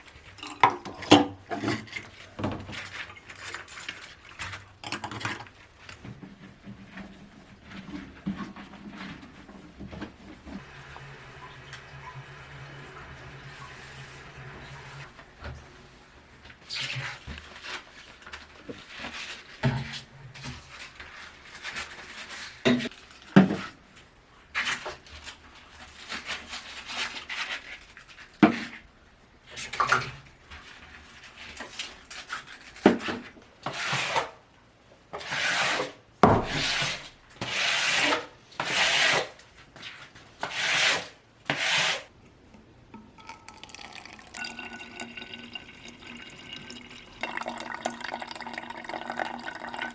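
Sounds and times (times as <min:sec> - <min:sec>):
brush scrubbing a surface: 0:35.2 - 0:39.4, 0:40.4 - 0:42.1.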